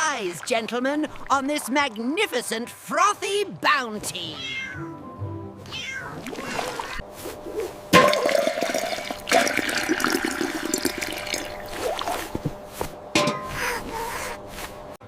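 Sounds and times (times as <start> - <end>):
cartoon liquid gushing and splashing: 6.2 - 7.0, 8.0 - 12.2.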